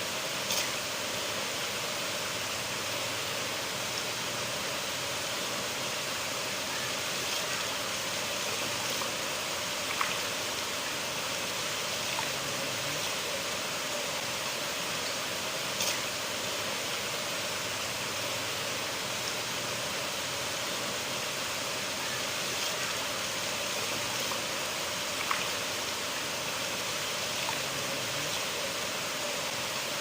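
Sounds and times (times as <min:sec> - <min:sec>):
river water rushing: 0:00.0 - 0:30.0
faint splashes: 0:08.5 - 0:10.6, 0:22.4 - 0:26.0, 0:27.2 - 0:28.5.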